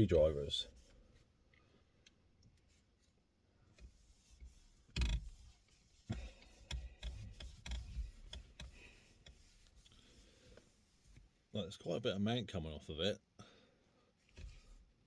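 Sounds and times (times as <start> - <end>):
hands rubbing leather: 2.6 - 11.4, 14.2 - 15.0.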